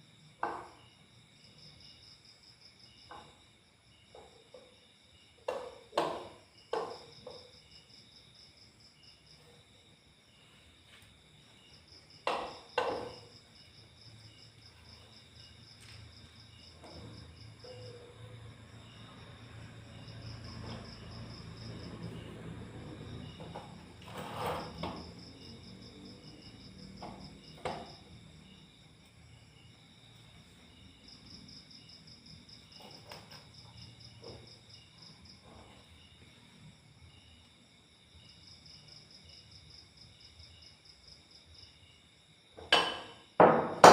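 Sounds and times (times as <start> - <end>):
pulsing insect trill: 11.4 - 42.2
sharp knocks of tools: 42.6 - 43.9.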